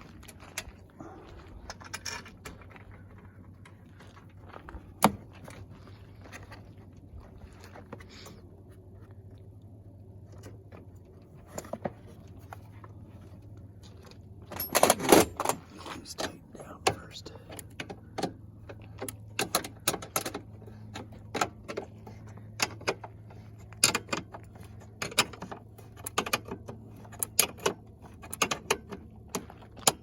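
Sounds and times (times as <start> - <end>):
low steady hum: 0.0 - 30.0
clicks of parts and tools: 14.5 - 30.0.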